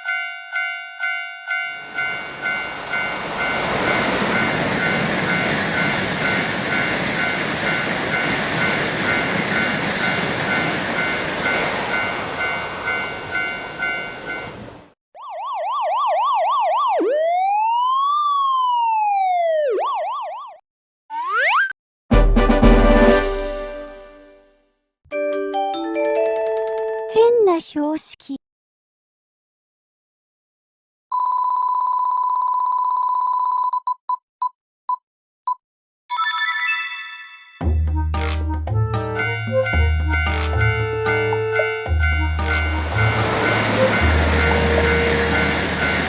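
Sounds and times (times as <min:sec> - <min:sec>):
railroad crossing bell clanging: 0:00.0 - 0:14.9, 0:39.2 - 0:46.0
train passing: 0:01.5 - 0:14.9, 0:37.8 - 0:46.0
electronic siren warbling: 0:15.2 - 0:21.8, 0:40.3 - 0:46.0.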